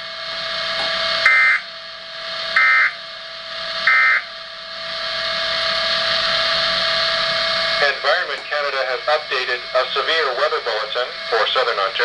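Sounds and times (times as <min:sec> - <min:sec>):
radio hiss: 0:07.7 - 0:12.0.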